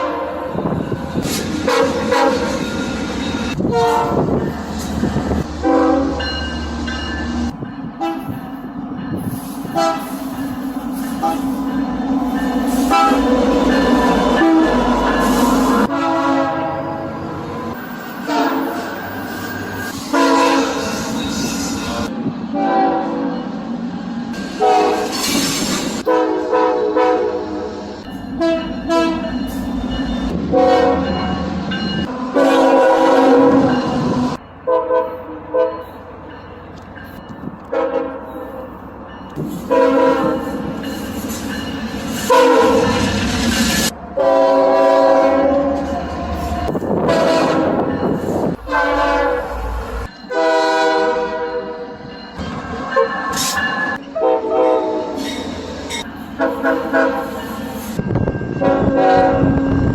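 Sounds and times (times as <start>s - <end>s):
locomotive air horn blasts: 0.0s - 0.6s, 1.6s - 2.7s, 3.6s - 4.3s, 5.5s - 6.2s, 9.7s - 10.3s, 12.8s - 13.6s, 14.3s - 17.3s, 18.2s - 19.0s, 20.0s - 21.0s, 22.5s - 23.3s, 24.5s - 25.2s, 26.0s - 27.8s, 28.4s - 29.3s, 30.4s - 31.1s, 32.3s - 35.9s, 37.7s - 38.2s, 39.7s - 40.6s, 42.3s - 43.1s, 44.1s - 47.9s, 48.5s - 51.9s, 54.2s - 55.3s, 56.4s - 57.4s, 58.6s - 59.9s
low rumble of passing train: 0.0s - 59.9s.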